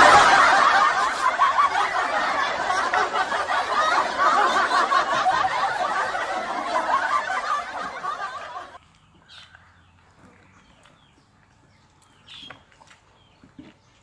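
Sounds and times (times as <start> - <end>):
people laughing and chuckling: 0.0 - 8.8.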